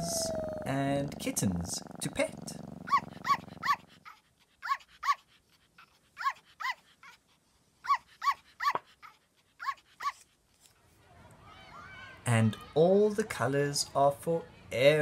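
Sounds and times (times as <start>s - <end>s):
puppy yipping: 2.9s - 3.8s, 4.6s - 5.2s, 6.2s - 7.2s, 7.8s - 10.2s.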